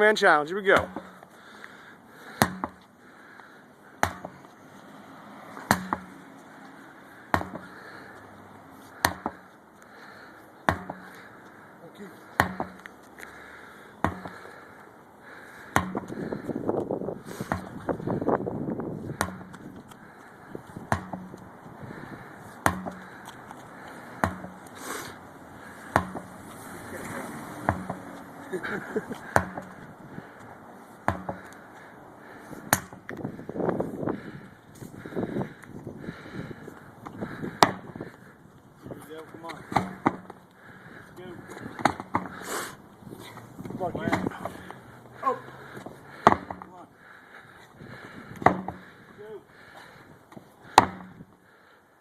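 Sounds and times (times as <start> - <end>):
sledgehammer striking a tire: 0.8 - 1.2, 2.4 - 2.8, 4.0 - 4.5, 5.7 - 6.2, 7.3 - 7.7, 9.0 - 9.4, 10.7 - 11.1, 12.4 - 12.8, 14.0 - 14.4, 15.7 - 16.2, 17.4 - 17.8, 19.1 - 19.6, 20.9 - 21.4, 22.6 - 23.1, 24.2 - 24.7, 25.9 - 26.3, 27.6 - 28.0, 29.3 - 29.8, 31.0 - 31.5, 32.6 - 33.1, 37.5 - 38.0, 39.7 - 40.4, 41.8 - 42.4, 46.2 - 46.7, 48.4 - 48.8, 50.7 - 51.2.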